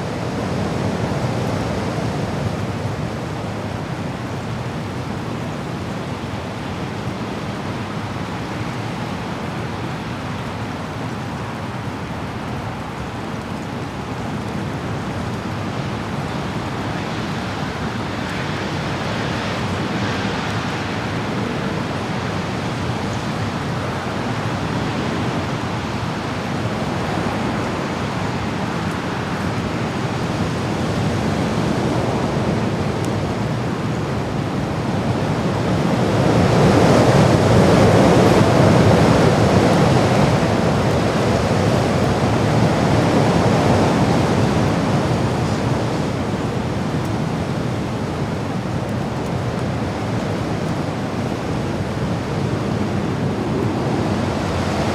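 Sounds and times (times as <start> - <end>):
wind blowing: 49.7 - 54.9.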